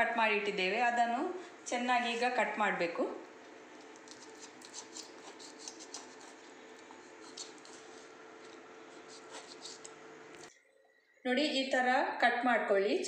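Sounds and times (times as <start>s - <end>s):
knife cutting brittle: 3.8s - 10.5s.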